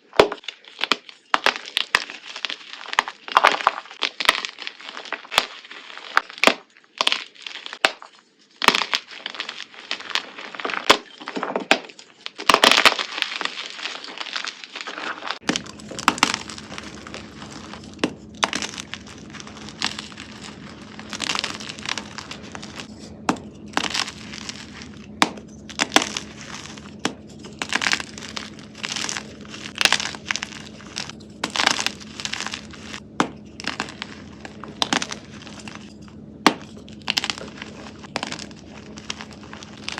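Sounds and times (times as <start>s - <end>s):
brittle crunching and crackling: 0.0s - 39.9s
steady low hum: 15.4s - 39.9s.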